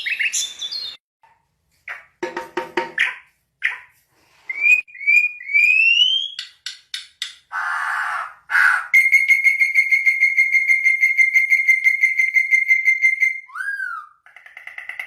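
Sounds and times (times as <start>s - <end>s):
downslurred bird whistle: 4.5s - 6.5s, 7.6s - 14.2s
harsh rasping bird calls: 7.4s - 9.1s.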